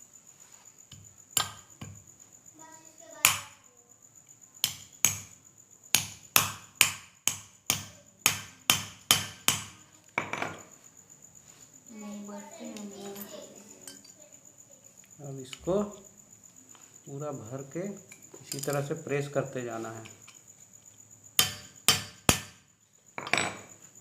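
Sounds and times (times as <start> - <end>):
hammer striking a rod: 5.9 - 9.8, 21.4 - 22.5.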